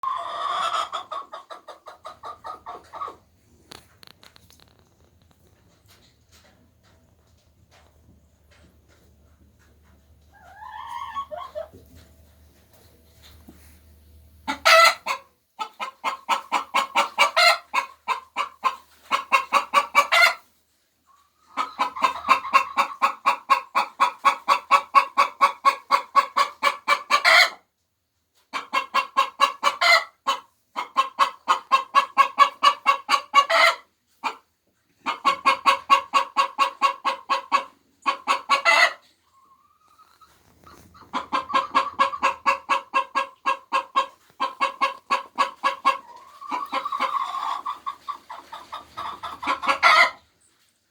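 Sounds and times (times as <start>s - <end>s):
hen clucking rapidly: 0.0s - 3.3s, 8.9s - 11.8s, 14.4s - 27.6s, 28.5s - 34.4s, 35.0s - 50.3s.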